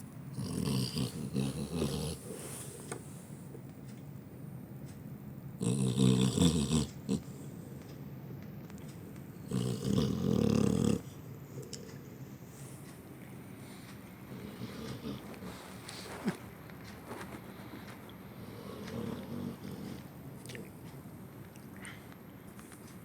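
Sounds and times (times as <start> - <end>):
dog snoring: 0.3 - 2.9, 5.6 - 7.5, 9.5 - 11.9, 14.3 - 16.5, 17.1 - 20.7.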